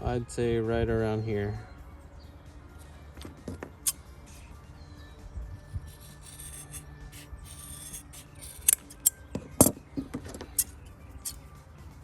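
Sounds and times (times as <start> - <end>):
seatbelt webbing being sawn: 5.8 - 9.1
sharp snips: 5.8 - 9.2.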